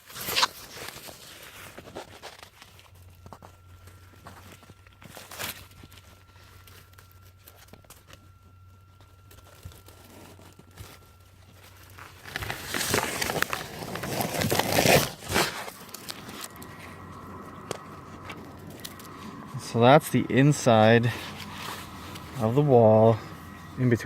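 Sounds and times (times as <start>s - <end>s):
material crinkling and rustling: 0.0s - 24.0s.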